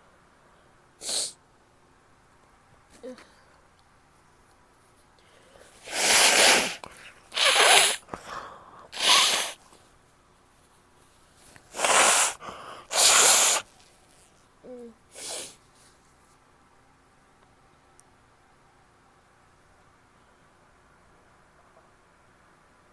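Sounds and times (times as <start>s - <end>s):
woman sneezing: 5.9s - 6.8s, 7.4s - 8.1s, 9.0s - 9.6s, 11.8s - 13.7s, 15.1s - 15.6s.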